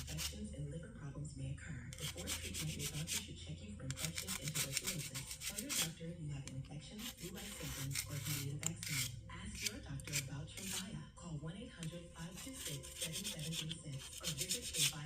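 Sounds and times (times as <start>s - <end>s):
hand scrubbing metal surface: 0.0s - 0.4s, 1.9s - 3.3s, 3.9s - 5.9s, 6.9s - 10.8s, 12.2s - 15.0s.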